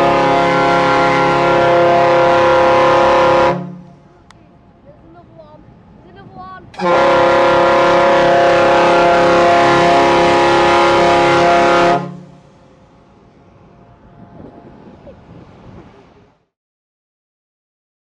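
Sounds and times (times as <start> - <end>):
ship's horn blast: 0.0 - 4.3, 6.6 - 16.3.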